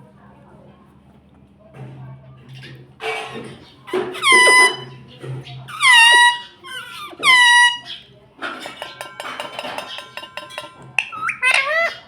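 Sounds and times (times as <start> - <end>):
parrot shrill calls: 4.2 - 4.9, 5.7 - 8.0, 11.0 - 12.0.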